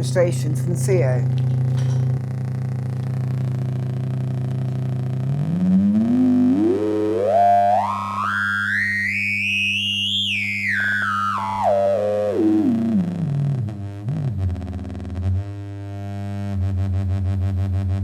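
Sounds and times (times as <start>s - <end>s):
buzzy pulsing sounds: 0.0s - 9.2s
steady mains hum: 0.0s - 15.8s
low wobbling tone: 0.0s - 18.0s
synthesizer tone sweeping up and down: 1.6s - 18.0s.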